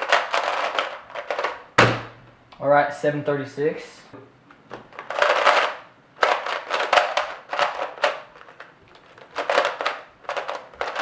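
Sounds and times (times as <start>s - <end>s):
puzzle cube plastic clacking: 0.0s - 2.1s, 4.5s - 11.0s.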